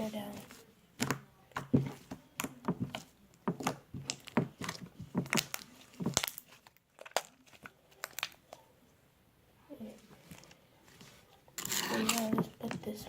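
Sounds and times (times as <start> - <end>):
slime clicking and popping: 2.4 - 6.4.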